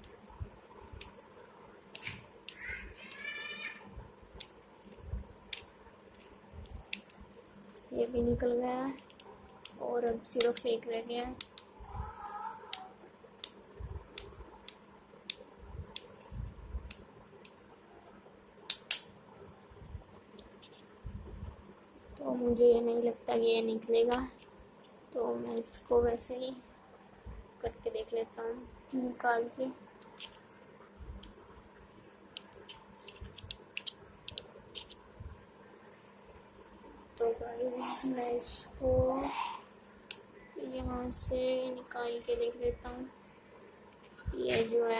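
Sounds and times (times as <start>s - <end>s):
small tool clicking on phone casing: 32.4s - 35.0s.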